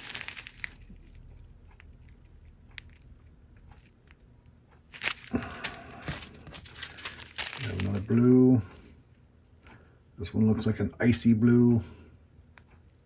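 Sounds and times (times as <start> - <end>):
light clicks from plastic bags: 0.0 - 1.8, 4.9 - 8.2.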